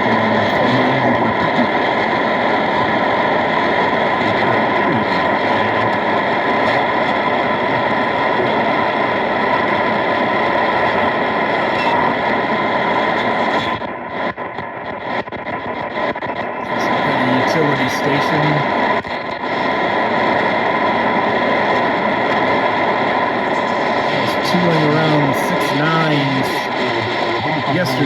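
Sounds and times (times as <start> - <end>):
radio static hiss: 0.0 - 28.0
steady radio tones: 0.0 - 28.0
radio tuning clicks: 23.5 - 28.0.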